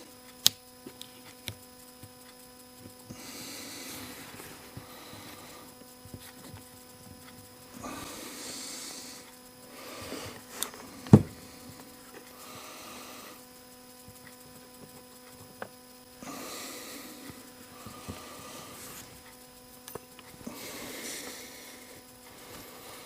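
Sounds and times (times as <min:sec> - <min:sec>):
steady electrical hum: 0:00.0 - 0:23.0
sharp clicks of small parts: 0:00.2 - 0:02.5
soft breath-like hisses: 0:03.0 - 0:06.4, 0:07.6 - 0:13.8, 0:16.2 - 0:19.4, 0:20.3 - 0:23.0.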